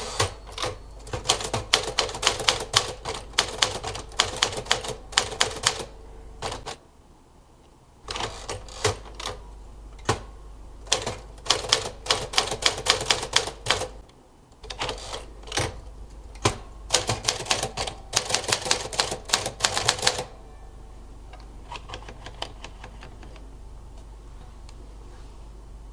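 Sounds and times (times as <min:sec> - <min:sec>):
typewriter key strikes: 0:16.4 - 0:20.3.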